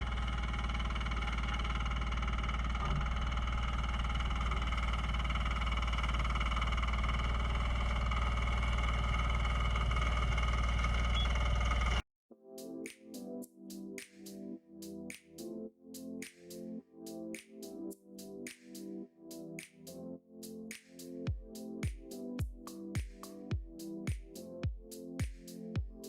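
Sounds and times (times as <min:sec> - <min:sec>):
bulldozer engine running: 0:00.0 - 0:12.0.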